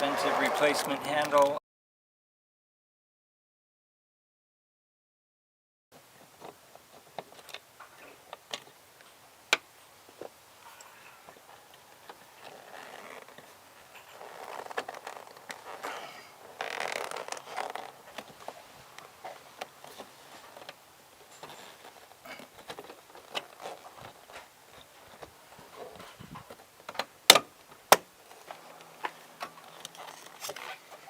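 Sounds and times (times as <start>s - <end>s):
small clicks taps and rustling: 6.2s - 15.9s, 16.5s - 31.0s.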